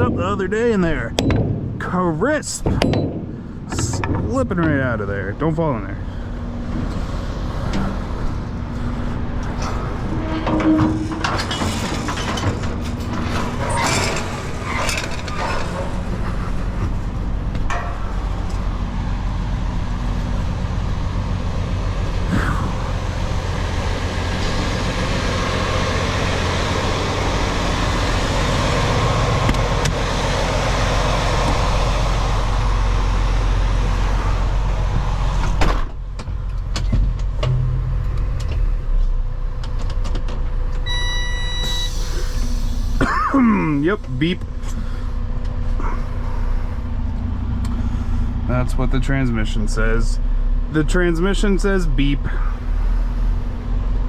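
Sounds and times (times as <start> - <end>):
metal clanks and knocks: 0.0 - 5.0, 8.7 - 18.8, 35.4 - 38.7
diesel truck engine idling: 0.0 - 10.2, 14.3 - 54.0.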